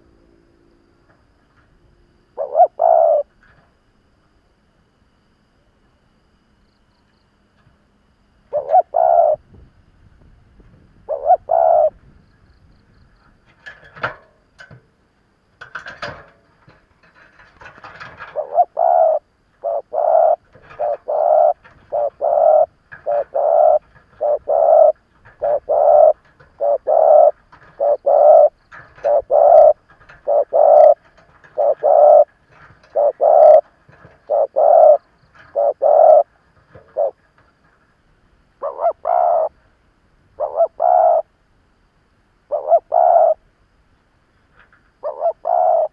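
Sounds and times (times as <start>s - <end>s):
dove cooing: 2.3s - 3.7s, 8.5s - 9.6s, 10.7s - 12.6s, 17.0s - 37.8s, 38.6s - 39.6s, 40.4s - 41.4s, 42.5s - 43.4s, 45.0s - 45.9s.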